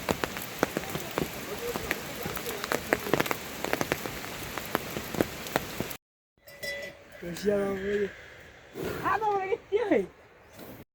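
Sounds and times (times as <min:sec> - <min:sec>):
rain hiss: 0:00.0 - 0:06.0
raindrops tapping a hard surface: 0:00.0 - 0:06.0.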